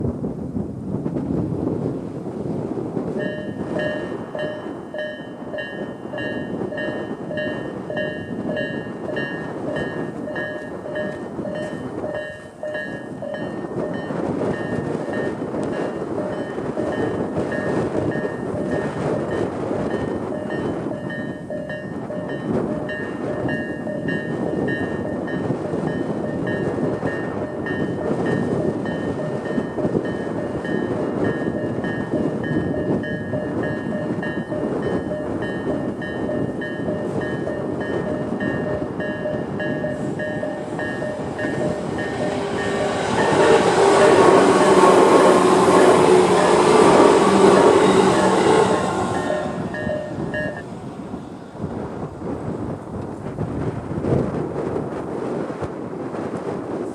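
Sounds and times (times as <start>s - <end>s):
train wheels on rails: 0.0s - 56.9s
level crossing warning bells: 3.2s - 50.7s.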